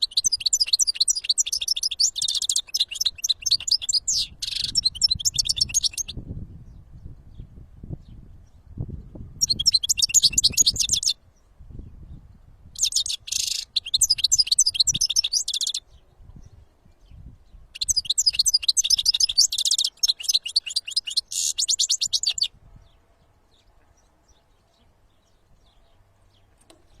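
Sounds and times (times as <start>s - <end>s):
bird twittering: 0.0s - 6.2s, 9.4s - 11.2s, 12.8s - 15.9s, 17.7s - 22.5s.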